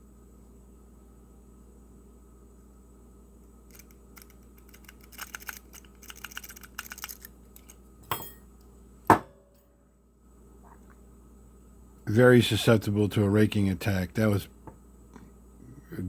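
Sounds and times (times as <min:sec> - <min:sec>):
lock pick clicking and scraping: 0:03.7 - 0:08.4.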